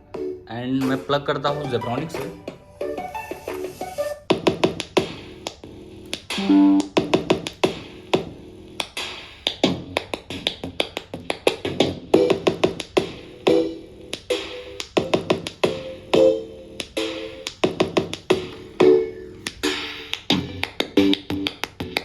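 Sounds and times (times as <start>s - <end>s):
electronic song through small speaker: 6.3s - 8.2s, 11.8s - 22.0s.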